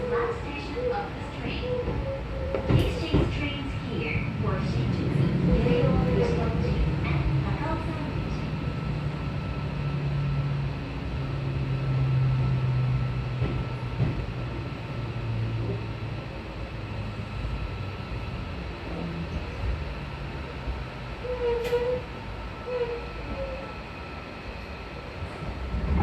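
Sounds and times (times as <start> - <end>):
brief squeal: 21.3 - 22.1.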